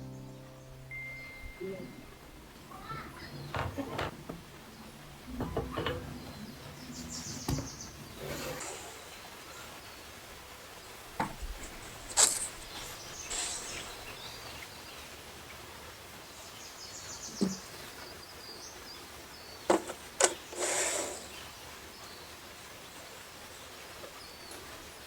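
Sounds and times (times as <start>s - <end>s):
objects knocking and clicking: 5.3s - 6.4s.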